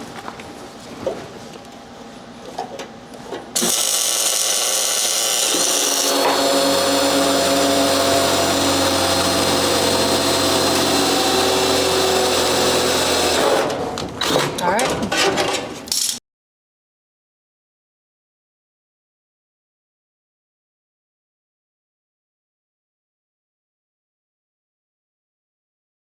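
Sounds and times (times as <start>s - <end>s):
electric power tool running: 3.6s - 14.5s.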